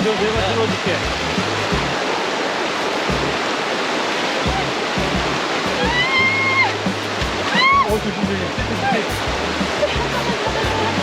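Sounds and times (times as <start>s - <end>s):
stream rushing over rocks: 0.0s - 11.0s.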